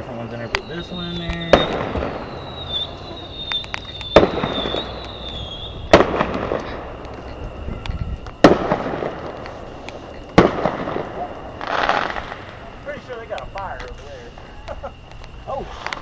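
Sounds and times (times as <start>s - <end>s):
high wavering whistle: 0.0s - 6.0s
firework bangs with crackle: 0.4s - 14.1s.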